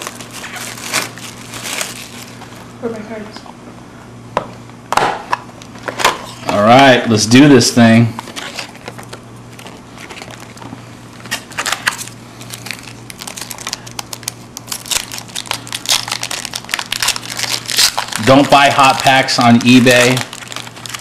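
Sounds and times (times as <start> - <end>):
plastic wrapping crinkling: 0.0 - 2.6, 8.2 - 21.0
steady low hum: 0.0 - 21.0.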